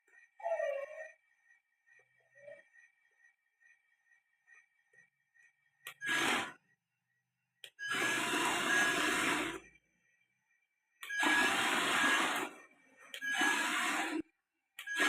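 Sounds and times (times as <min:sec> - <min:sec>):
toy truck motor whirring: 0:05.8 - 0:06.6, 0:07.6 - 0:09.8, 0:11.0 - 0:15.0.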